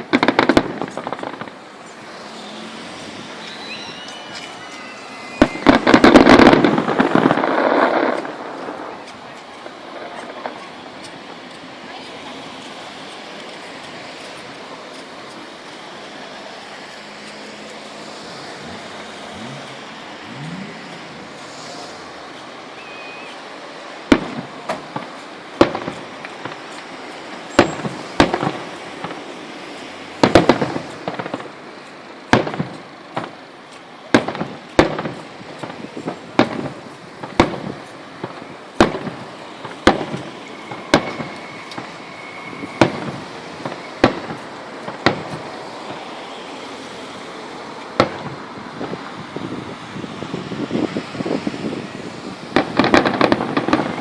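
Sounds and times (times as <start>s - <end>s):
firework shells booming: 0.0s - 16.0s, 17.1s - 46.1s, 47.9s - 49.2s, 52.5s - 54.0s.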